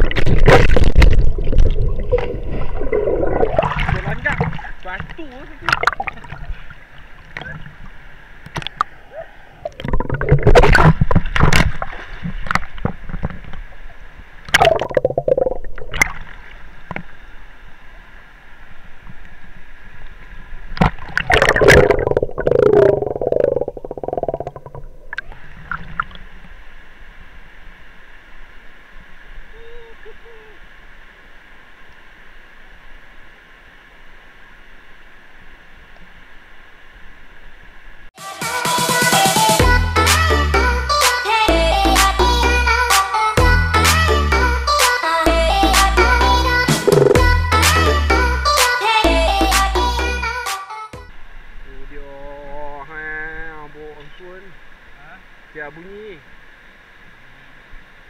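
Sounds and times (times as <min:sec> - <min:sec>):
muffled water splashing: 0:00.0 - 0:38.1
muffled rush of water: 0:00.0 - 0:38.2, 0:51.0 - 0:58.0.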